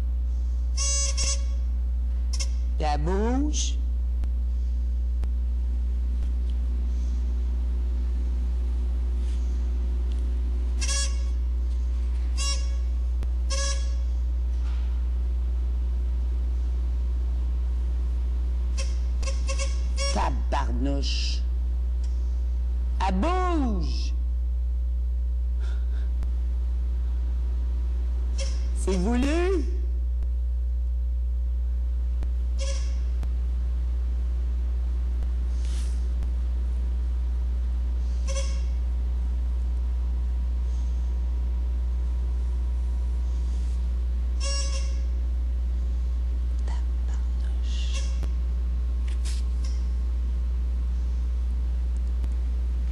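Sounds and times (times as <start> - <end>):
low electrical hum: 0.0 - 52.9
buzzer of wire game: 0.7 - 2.7, 10.7 - 14.2, 18.7 - 20.3, 28.3 - 29.8, 32.5 - 33.3, 38.0 - 38.9, 44.3 - 45.2
short soft hissing: 35.5 - 36.1.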